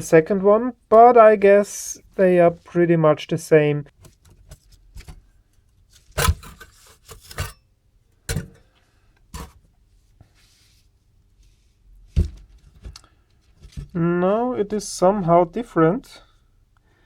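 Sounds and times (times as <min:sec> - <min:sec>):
rubbing and scraping: 0:05.9 - 0:07.6.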